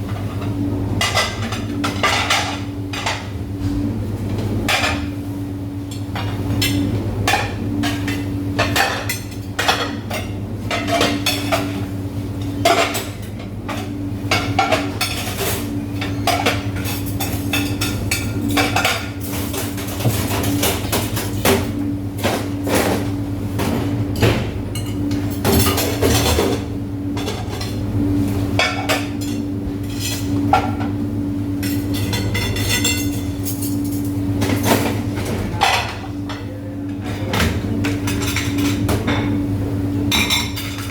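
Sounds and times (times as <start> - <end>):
low machine hum: 0.0 - 40.9
dishes and cutlery clattering: 31.7 - 39.4, 40.1 - 40.9.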